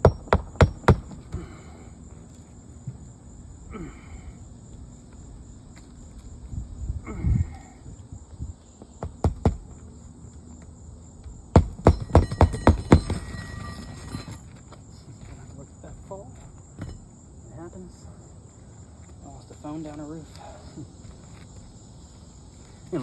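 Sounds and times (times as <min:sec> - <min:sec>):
hammer striking nails: 0:00.0 - 0:01.4, 0:09.0 - 0:09.7, 0:11.5 - 0:14.4
crickets chirring: 0:00.0 - 0:23.0.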